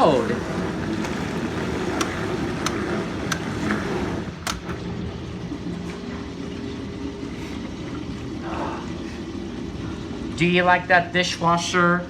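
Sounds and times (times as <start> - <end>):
dishwasher filling with water: 0.0 - 12.0
sharp clicks: 4.5 - 4.7.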